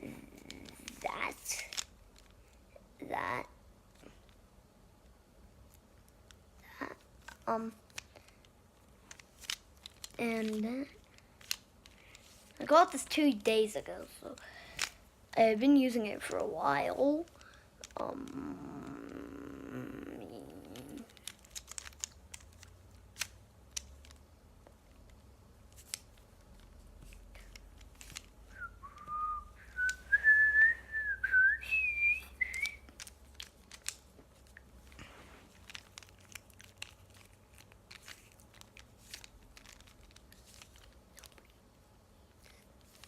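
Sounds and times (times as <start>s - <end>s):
puzzle cube plastic clicks: 0.2s - 2.7s, 5.6s - 13.2s, 13.8s - 30.2s, 31.3s - 43.0s
person whistling a tune: 28.5s - 32.9s.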